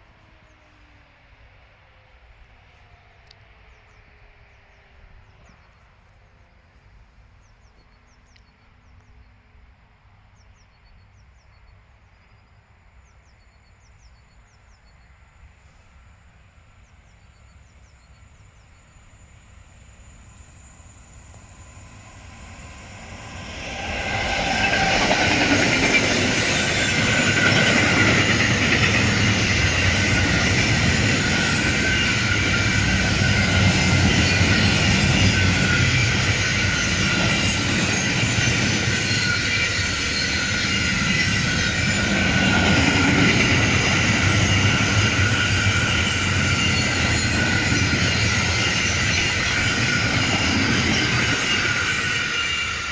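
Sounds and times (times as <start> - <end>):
train passing: 12.6 - 52.9.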